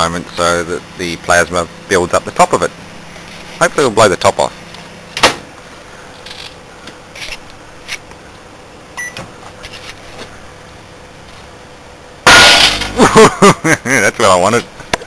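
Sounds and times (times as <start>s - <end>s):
microwave oven humming: 8.4s - 9.6s.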